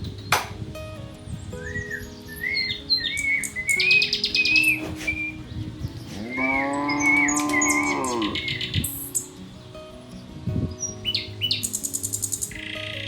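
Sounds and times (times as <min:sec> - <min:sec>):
small birds chirping: 0:00.0 - 0:13.0
cow mooing: 0:06.1 - 0:08.6.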